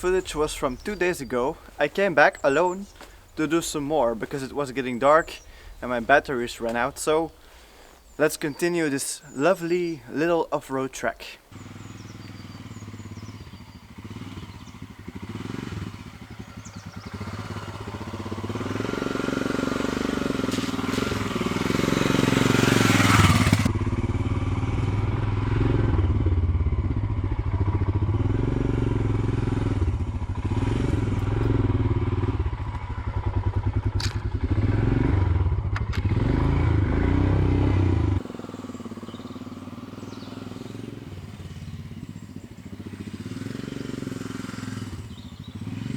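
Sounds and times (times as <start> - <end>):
motorcycle engine running: 11.5 - 45.9.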